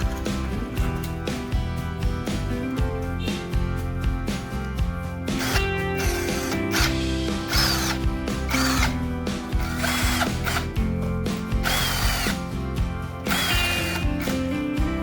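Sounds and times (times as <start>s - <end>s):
background music: 0.0s - 15.0s
power drill bursts: 5.3s - 9.0s, 9.6s - 10.8s, 11.6s - 12.4s, 13.2s - 14.5s.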